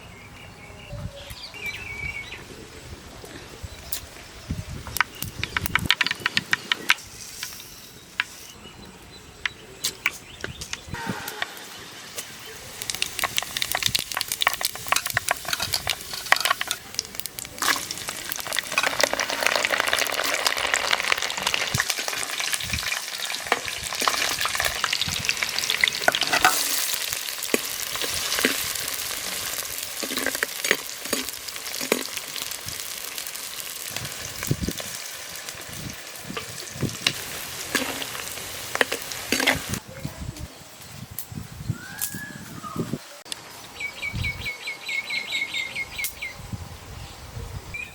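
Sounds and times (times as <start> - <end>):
food sizzling in hot oil: 11.6 - 39.8
utensil scraping a pan: 26.0 - 28.7, 29.9 - 32.2, 38.8 - 39.8.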